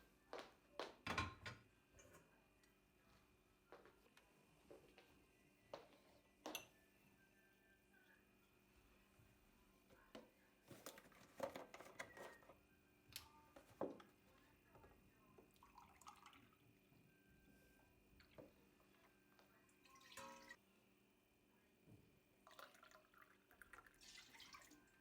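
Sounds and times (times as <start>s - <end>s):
light kitchen clicks and knocks: 0.9s - 2.2s.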